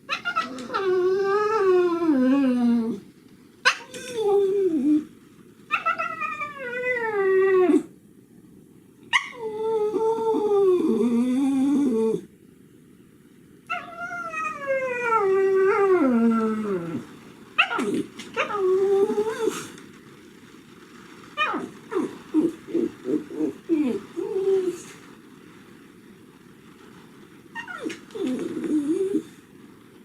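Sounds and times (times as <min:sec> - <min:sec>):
dog howling and whining: 0:00.0 - 0:07.9, 0:09.1 - 0:12.3, 0:13.7 - 0:19.8, 0:21.4 - 0:25.1, 0:27.5 - 0:29.4.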